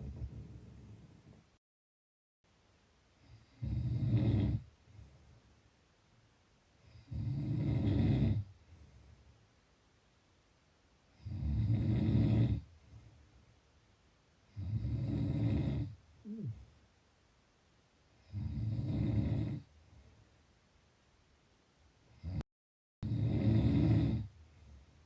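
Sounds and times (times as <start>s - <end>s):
person snoring: 3.2s - 4.7s, 6.8s - 8.5s, 11.2s - 12.7s, 14.5s - 16.6s, 18.2s - 19.7s, 23.0s - 24.3s.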